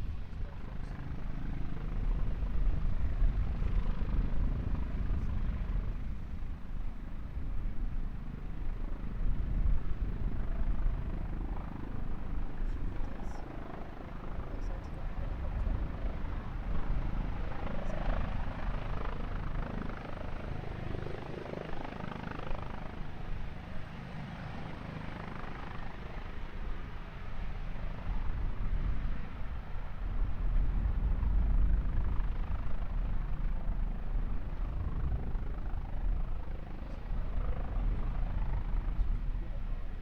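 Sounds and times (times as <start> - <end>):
aircraft rumbling roar: 22.6 - 40.0.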